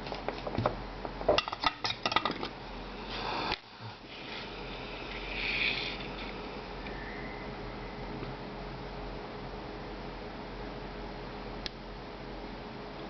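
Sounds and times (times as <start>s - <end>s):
short hiss: 3.0s - 6.4s.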